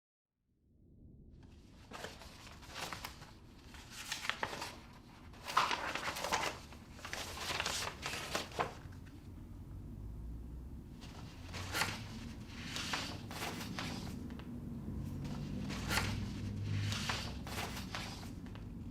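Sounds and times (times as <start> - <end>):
low steady hum: 0.6 - 18.9
crinkling and rustling: 1.8 - 9.2, 11.0 - 14.5.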